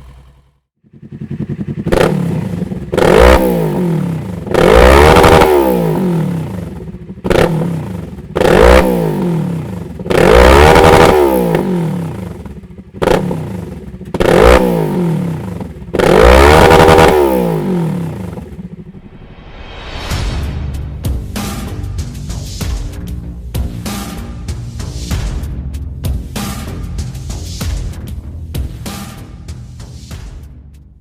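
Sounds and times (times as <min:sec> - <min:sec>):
motorcycle engine revving: 0:00.0 - 0:19.5.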